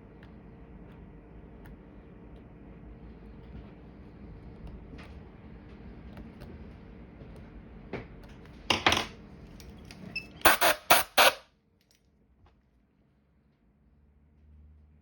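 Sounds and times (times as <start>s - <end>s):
low steady hum: 0.0s - 14.5s
small tool scratching and clicking: 9.9s - 11.4s.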